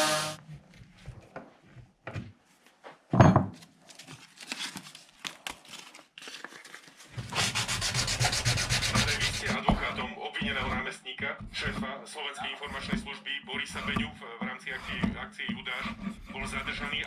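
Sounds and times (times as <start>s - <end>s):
sandpaper rubbing on wood: 7.3s - 10.9s, 12.4s - 17.0s.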